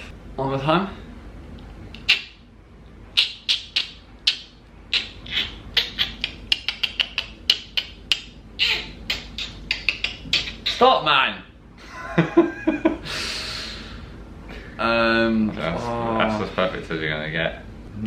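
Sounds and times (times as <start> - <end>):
person imitating dolphin clicks: 2.0 - 2.4, 3.2 - 10.9.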